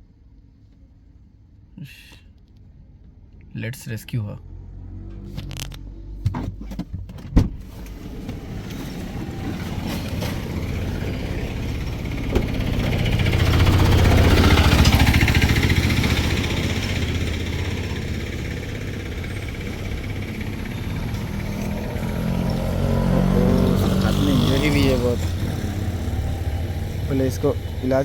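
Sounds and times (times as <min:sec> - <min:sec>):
motor vehicle passing by: 0:04.4 - 0:06.3, 0:07.7 - 0:28.0.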